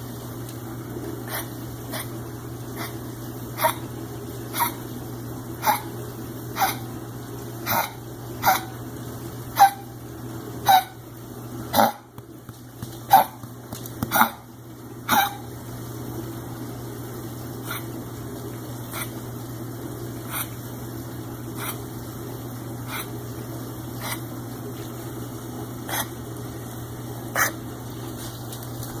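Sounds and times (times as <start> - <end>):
dog coughing: 1.3 - 2.2, 2.8 - 3.0, 3.6 - 3.9, 4.5 - 4.8, 5.6 - 5.9, 6.6 - 6.8, 7.6 - 8.7, 11.7 - 12.1, 14.1 - 14.4, 15.1 - 15.4, 24.0 - 24.3, 25.9 - 26.2, 27.4 - 27.6.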